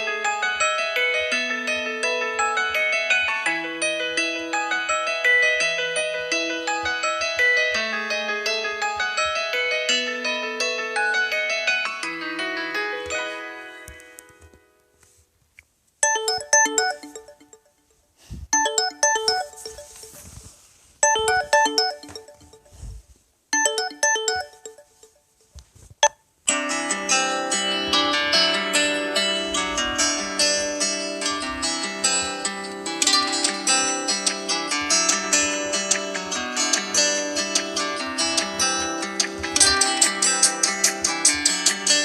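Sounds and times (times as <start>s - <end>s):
phone ringtone melody: 16.0s - 18.0s, 18.6s - 25.3s.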